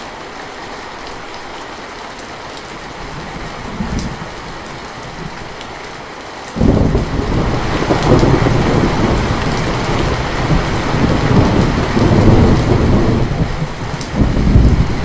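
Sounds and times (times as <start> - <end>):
rain falling: 0.0 - 15.0
thunder rumbling: 3.0 - 5.5, 6.6 - 15.0.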